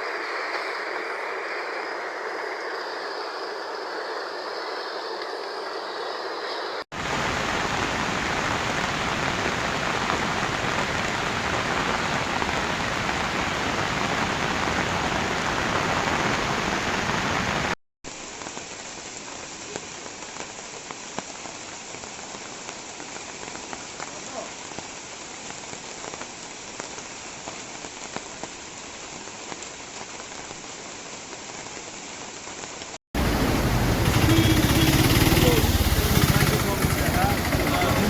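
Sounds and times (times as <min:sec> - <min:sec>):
flood water rushing: 0:06.9 - 0:17.8, 0:33.2 - 0:38.0
heavy rain: 0:06.9 - 0:38.0.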